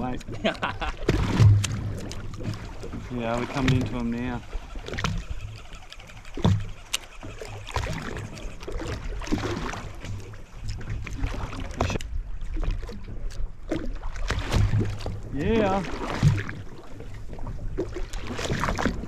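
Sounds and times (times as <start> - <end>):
water washing: 0.0 - 12.0
boat engine running: 0.0 - 19.0
wind: 0.0 - 19.0.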